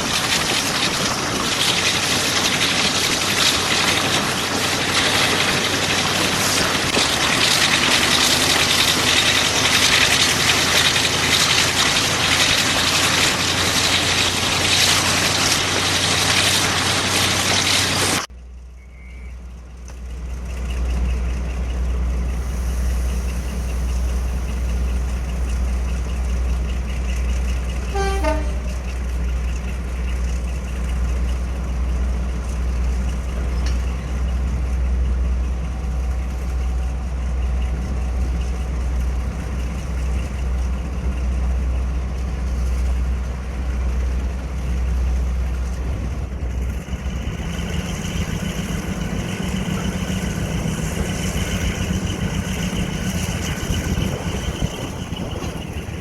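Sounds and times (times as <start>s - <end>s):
diesel locomotive engine rumble: 0.0s - 56.0s
locomotive horn toot: 27.8s - 29.2s.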